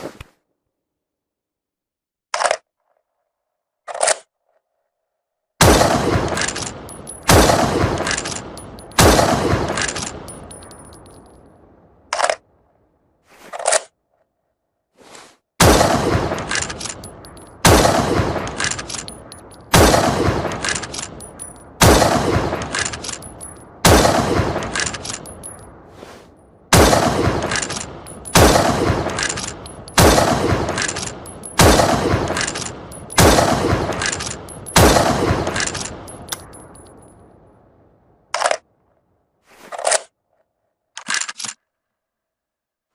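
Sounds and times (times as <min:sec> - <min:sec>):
rifle shots echoing: 0:05.6 - 0:11.1, 0:15.6 - 0:25.5, 0:26.7 - 0:36.8.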